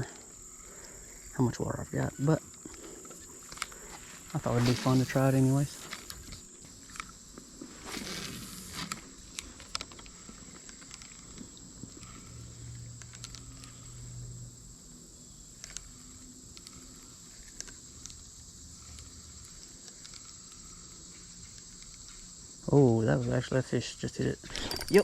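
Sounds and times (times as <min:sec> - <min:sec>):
insects trilling: 0:00.0 - 0:25.0
faint clicks: 0:02.4 - 0:04.4, 0:08.8 - 0:14.3, 0:15.5 - 0:22.3.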